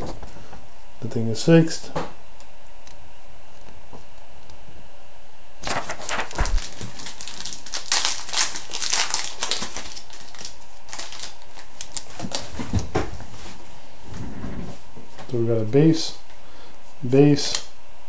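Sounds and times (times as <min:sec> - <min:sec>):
wrapper tearing and crinkling: 0:05.6 - 0:12.6
cards being handled: 0:05.6 - 0:12.8.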